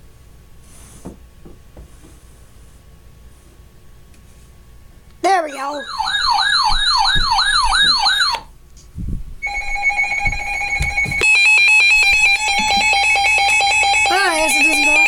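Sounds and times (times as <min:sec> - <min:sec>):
steady alert tone: 0:05.3 - 0:07.1, 0:09.4 - 0:15.0
siren-like warble alarm: 0:05.5 - 0:08.5, 0:09.4 - 0:15.0
low thumps: 0:06.6 - 0:08.0, 0:09.0 - 0:12.4
rapid pulsing beep: 0:09.4 - 0:15.0.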